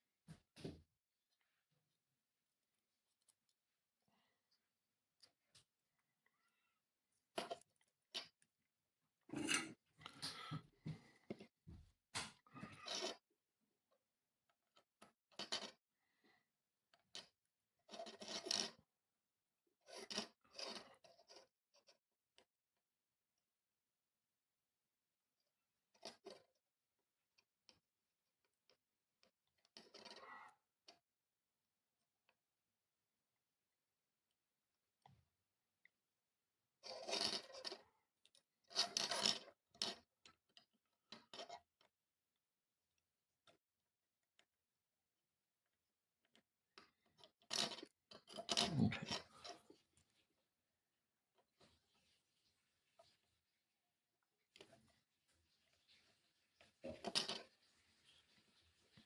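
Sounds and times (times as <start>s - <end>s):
faint scraping and rustling: 51.3s - 53.6s, 54.5s - 59.0s.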